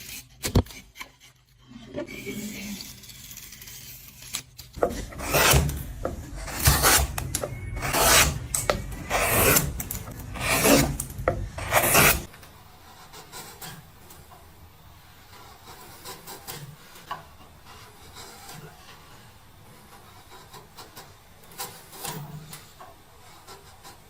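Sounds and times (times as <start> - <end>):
hand tool scraping wood: 4.8 - 12.3.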